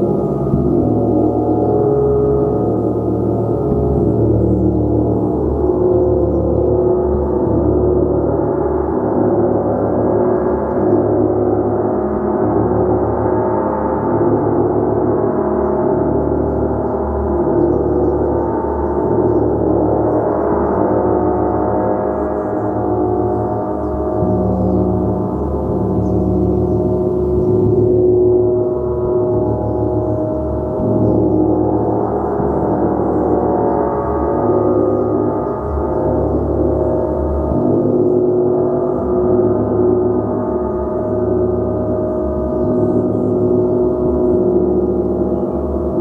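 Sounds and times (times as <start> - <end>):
gong playing: 0.0 - 10.3, 20.1 - 46.0.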